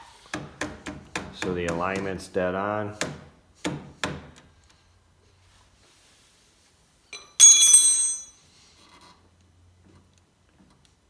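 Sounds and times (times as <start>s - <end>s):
metal part struck ringing: 7.2s - 8.3s.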